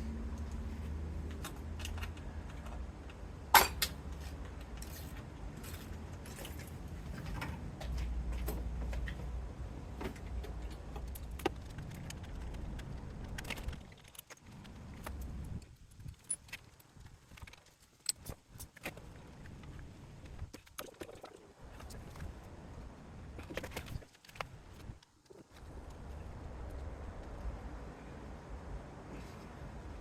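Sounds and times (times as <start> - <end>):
steady low rumble: 5.3 - 16.2.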